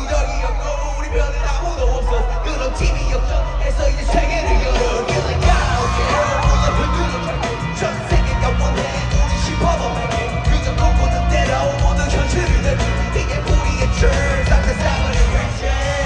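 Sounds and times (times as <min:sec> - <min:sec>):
live pop music with singing: 0:00.0 - 0:16.0.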